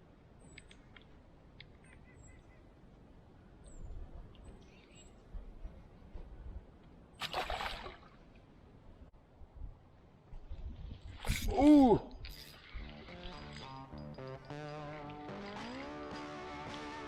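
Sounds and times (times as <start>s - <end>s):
small birds chirping: 1.6s - 2.8s, 3.6s - 5.8s.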